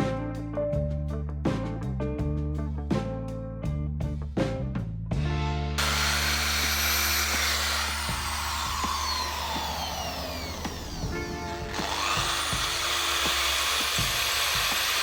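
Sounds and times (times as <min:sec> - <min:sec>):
electric drill whining: 0:05.8 - 0:15.0.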